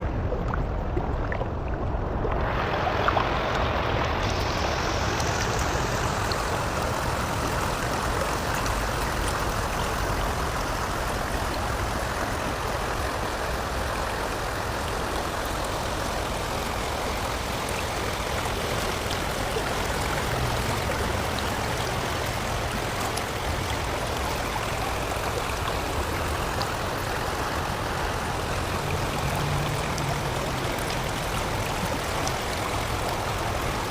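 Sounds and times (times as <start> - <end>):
rushing flowing water: 0.0 - 33.9.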